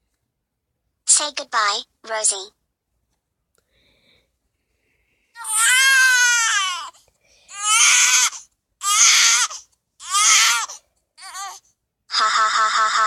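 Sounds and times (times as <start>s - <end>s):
baby crying: 5.4s - 13.0s.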